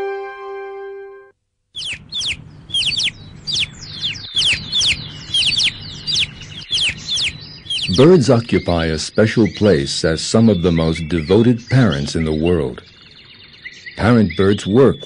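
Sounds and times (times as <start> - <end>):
sustained musical note: 0.0 - 1.3
small birds chirping: 1.8 - 15.0.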